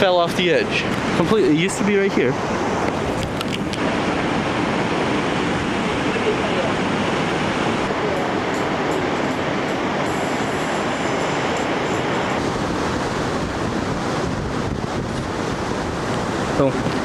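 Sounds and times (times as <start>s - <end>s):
ocean surf breaking waves: 0.0s - 17.0s.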